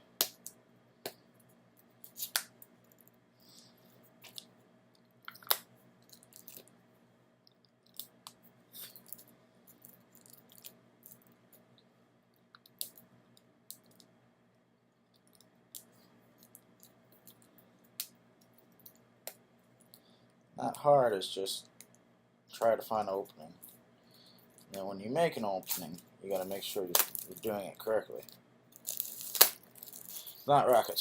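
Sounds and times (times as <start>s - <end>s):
faint steady hum: 0.0s - 31.0s
plastic wrap crinkling and tearing: 25.6s - 27.5s, 28.2s - 31.0s.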